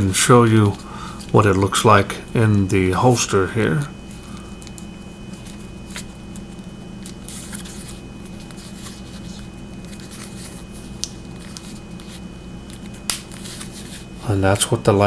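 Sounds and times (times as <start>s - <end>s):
steady low hum: 0.0s - 15.0s
soft rustling: 4.0s - 14.3s.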